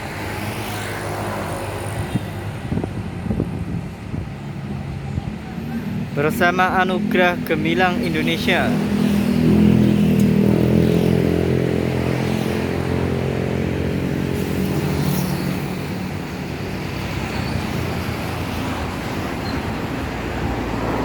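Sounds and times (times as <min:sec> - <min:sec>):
traffic noise: 0:00.0 - 0:21.0.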